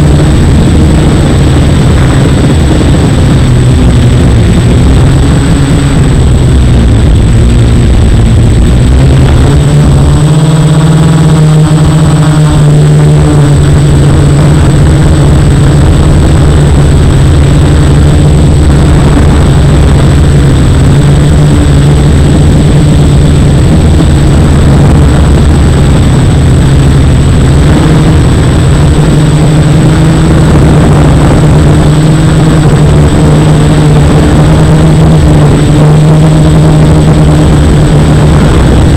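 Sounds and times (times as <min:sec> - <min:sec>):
quadcopter propellers buzzing: 0:00.0 - 0:38.9.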